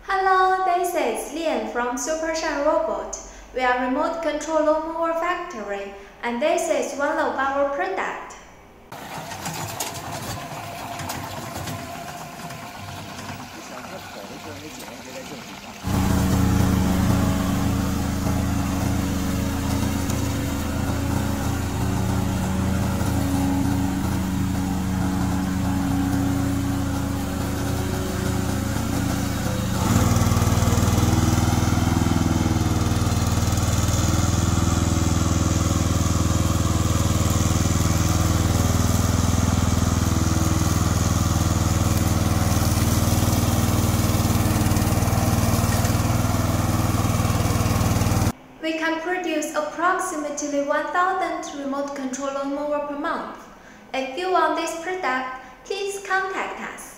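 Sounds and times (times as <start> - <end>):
lawn mower engine running: 8.9 - 48.4.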